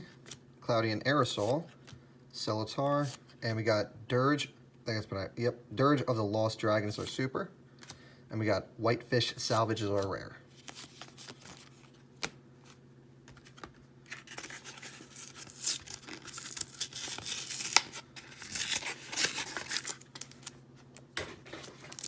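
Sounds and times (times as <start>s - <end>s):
wrapper tearing and crinkling: 14.1s - 20.6s, 21.4s - 22.0s.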